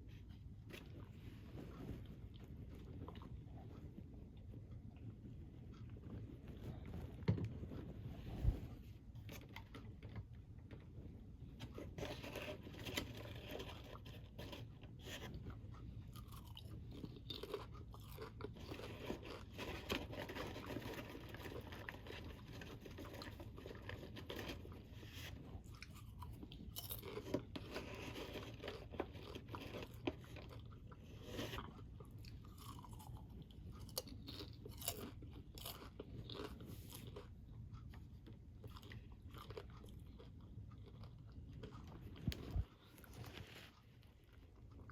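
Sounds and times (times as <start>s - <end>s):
person chewing crunchy snack: 11.8s - 43.8s.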